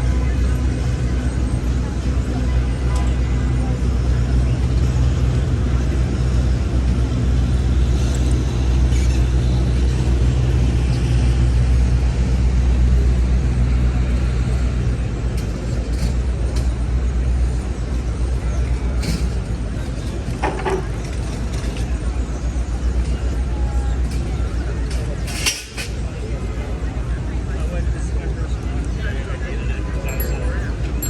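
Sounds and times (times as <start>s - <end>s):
traffic engine rumble: 0.0s - 31.0s.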